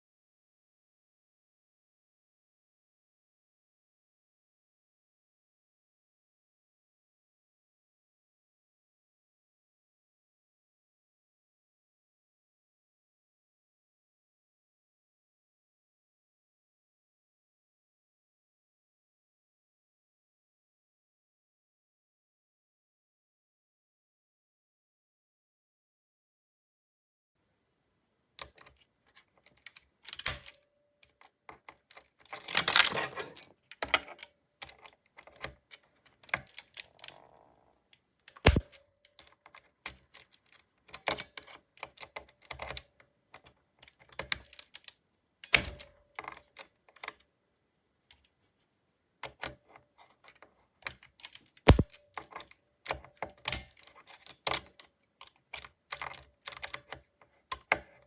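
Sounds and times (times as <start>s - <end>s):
mechanical keyboard keys clicking: 38.4s - 38.8s, 51.2s - 52.5s.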